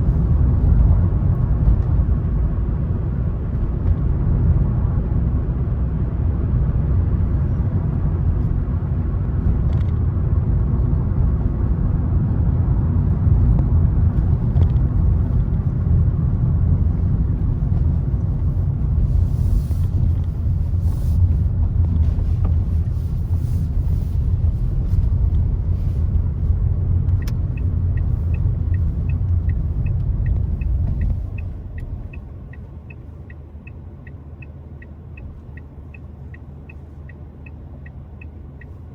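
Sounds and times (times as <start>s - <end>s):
car road and tyre rumble: 0.0s - 38.9s
regular ticking: 27.1s - 38.8s.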